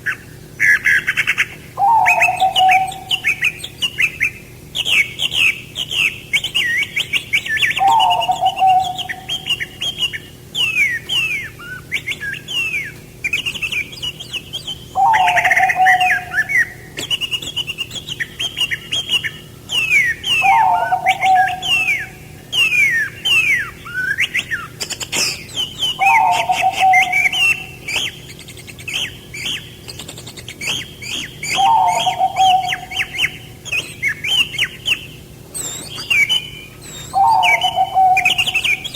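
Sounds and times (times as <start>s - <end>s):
low bird call: 0.0s - 38.9s
songbirds chirping: 0.0s - 38.9s.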